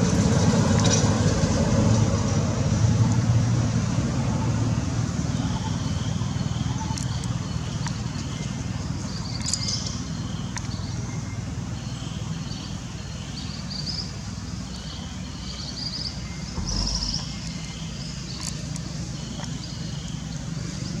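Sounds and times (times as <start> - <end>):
low bump: 16.6 - 17.6
low rumble: 16.6 - 17.6.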